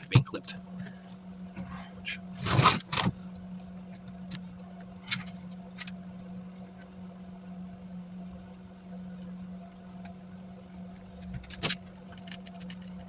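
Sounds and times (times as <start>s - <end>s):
steady low hum: 0.0s - 13.0s
plastic scraping rustle: 2.4s - 3.2s.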